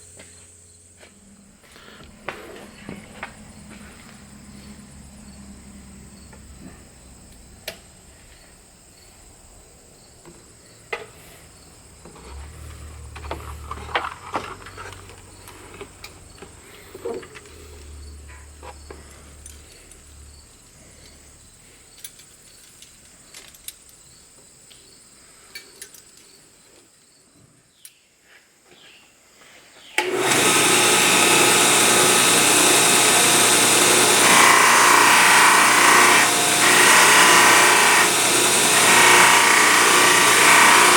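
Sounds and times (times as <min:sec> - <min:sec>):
power tool whining: 0:11.2 - 0:19.8, 0:30.0 - 0:40.9.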